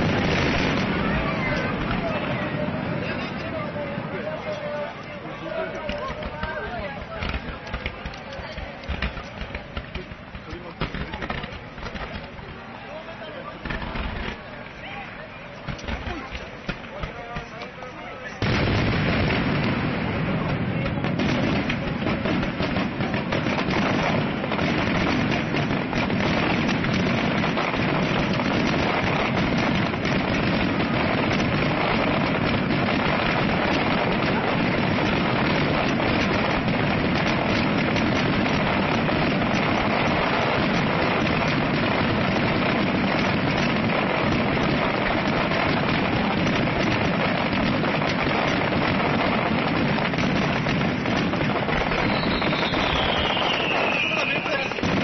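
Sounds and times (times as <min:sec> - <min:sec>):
fireworks bursting and crackling: 0:00.0 - 0:55.0
falling firework whistle: 0:51.6 - 0:55.0.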